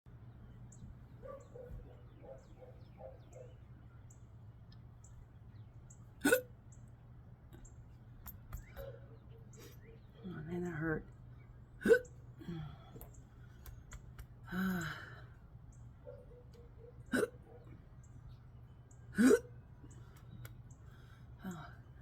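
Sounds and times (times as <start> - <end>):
low steady hum: 0.1 - 22.0
woman hiccuping: 6.2 - 6.5, 11.8 - 12.6, 17.1 - 17.4, 19.2 - 19.6.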